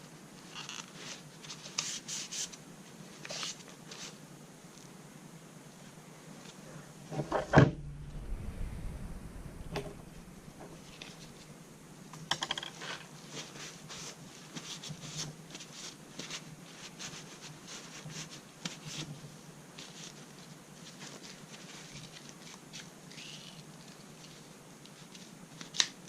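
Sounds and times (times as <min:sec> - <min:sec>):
loud thump: 0:07.2 - 0:11.4.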